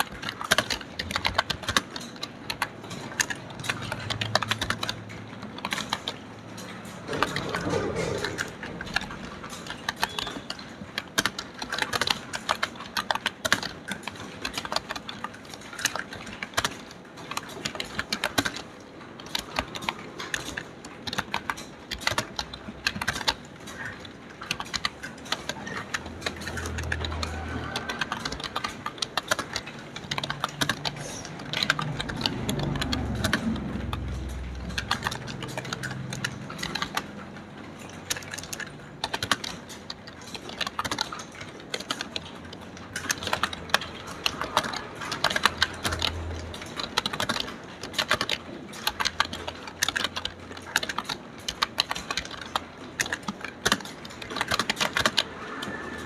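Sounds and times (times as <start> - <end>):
fast keyboard typing: 0.0 - 56.0.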